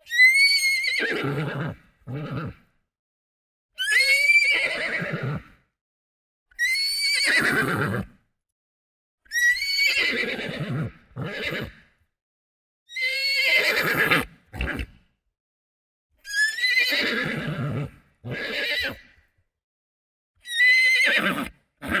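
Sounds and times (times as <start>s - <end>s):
horse whinnying: 3.8s - 5.3s, 6.7s - 8.1s, 9.6s - 11.7s, 13.0s - 14.9s, 16.4s - 19.0s, 20.6s - 22.0s.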